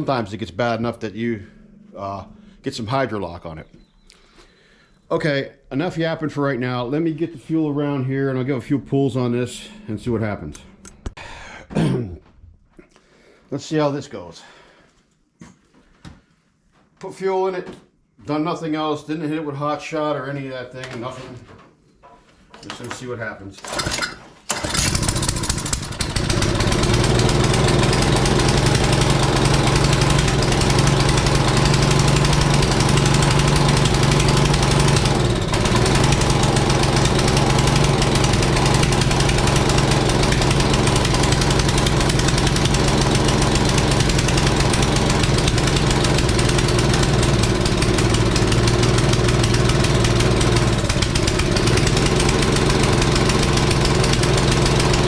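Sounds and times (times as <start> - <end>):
pressure washer engine running: 24.5 - 55.0.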